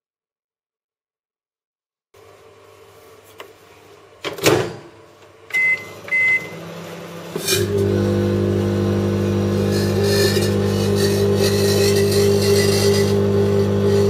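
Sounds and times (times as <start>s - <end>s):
microwave oven humming: 2.2s - 14.0s
microwave oven clunk: 4.2s - 9.4s
short keypad beeps: 5.6s - 6.6s.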